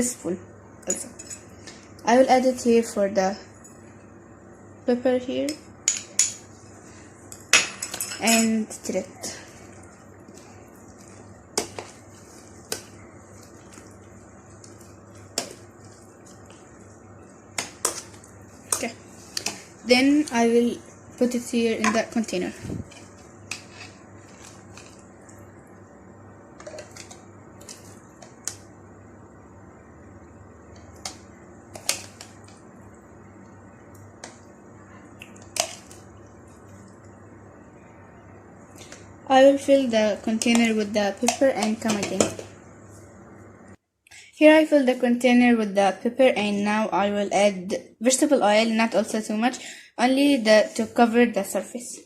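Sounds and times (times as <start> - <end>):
faint steady hum: 0.0 - 52.0
spoon stirring thick puree: 5.5 - 25.5.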